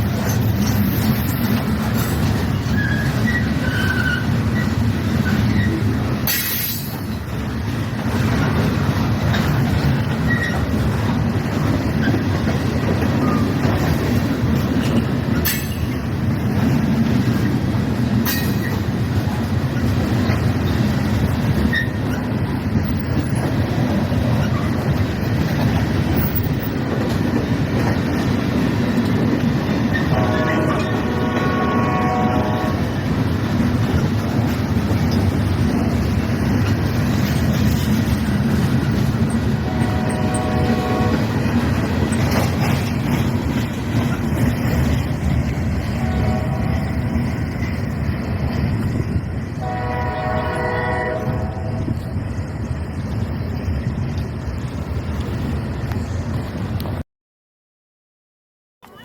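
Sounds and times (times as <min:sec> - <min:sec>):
wheels clicking over rail joints: 0:00.0 - 0:49.3
train wheels rumbling on rails: 0:00.0 - 0:57.0
high wheel squeals: 0:02.7 - 0:05.8.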